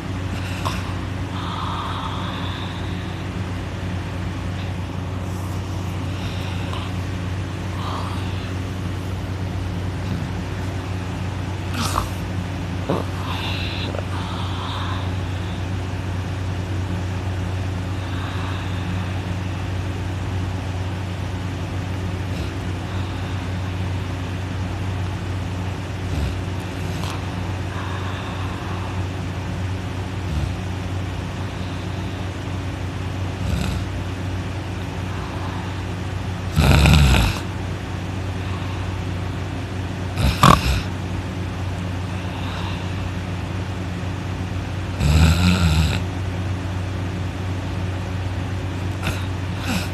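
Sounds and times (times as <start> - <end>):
person snoring: 0.0 - 3.4, 4.6 - 9.2, 11.7 - 15.8, 17.9 - 19.6, 22.2 - 23.8, 26.0 - 29.2, 30.2 - 32.4, 33.4 - 34.0, 34.8 - 37.5, 40.1 - 40.9, 42.0 - 43.2, 44.9 - 46.1, 48.9 - 49.9
low hum: 0.0 - 36.6, 37.4 - 45.0.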